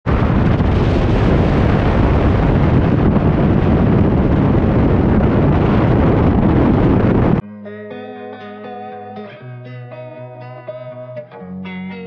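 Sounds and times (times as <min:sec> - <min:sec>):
wind buffeting microphone: 0:00.1 - 0:07.4.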